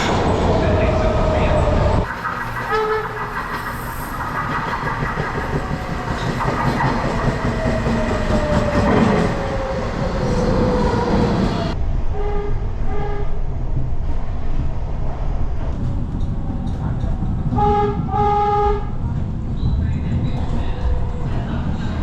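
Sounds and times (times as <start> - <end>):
train clickety-clack on rails: 0.0 - 11.8, 13.0 - 22.0
train horn toots: 2.7 - 3.3, 12.1 - 13.4, 17.5 - 19.0.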